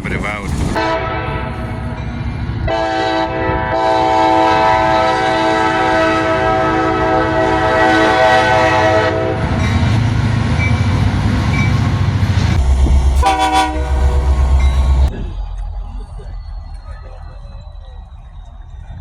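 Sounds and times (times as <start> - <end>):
diesel locomotive engine rumbling: 0.0 - 19.0
locomotive horn blast: 0.7 - 1.9, 2.6 - 9.6, 12.6 - 15.1.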